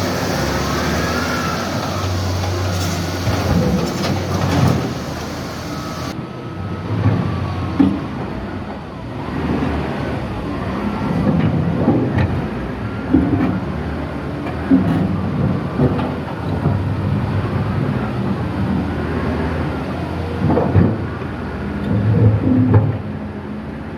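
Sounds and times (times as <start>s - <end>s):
excavator diesel engine running: 0.0s - 23.3s
sharp knocks and clatter: 1.8s - 5.7s.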